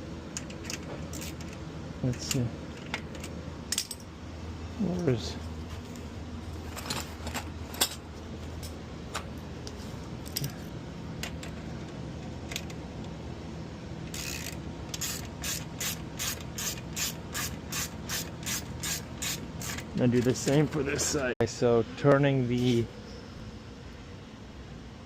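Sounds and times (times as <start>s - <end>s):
ratchet wrench clicking: 14.1s - 19.9s.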